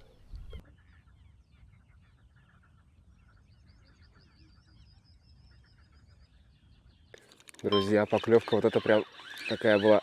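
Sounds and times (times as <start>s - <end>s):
small birds chirping: 0.0s - 10.0s
bird trill of high notes: 7.7s - 10.0s.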